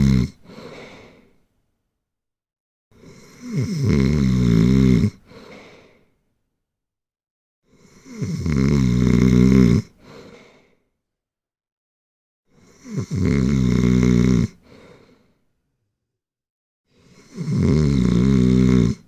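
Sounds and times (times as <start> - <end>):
loud rattling snoring: 0.0 - 0.4, 3.1 - 5.2, 7.9 - 9.9, 12.7 - 14.6, 17.2 - 19.0
soft out-breath: 0.4 - 1.5, 5.2 - 6.2, 10.0 - 10.9, 14.6 - 15.6.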